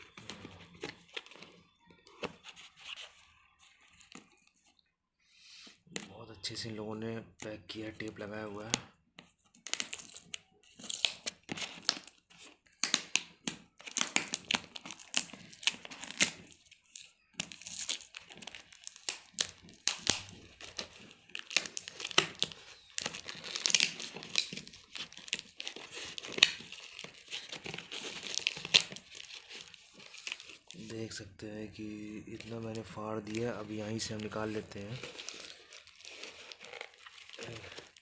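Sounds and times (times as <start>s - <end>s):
packaging tearing and crinkling: 9.6s - 38.0s.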